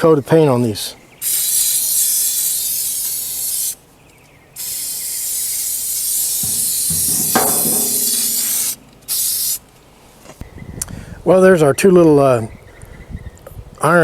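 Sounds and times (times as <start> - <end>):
spray can hissing: 1.2 - 3.8, 4.6 - 9.6.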